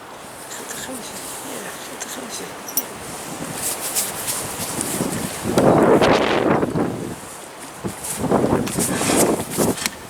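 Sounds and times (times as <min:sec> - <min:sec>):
wind rushing on microphone: 0:02.5 - 0:10.0.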